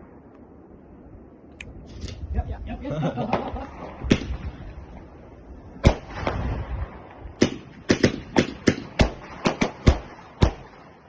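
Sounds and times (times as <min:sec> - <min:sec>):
fireworks bangs: 0:03.2 - 0:11.0.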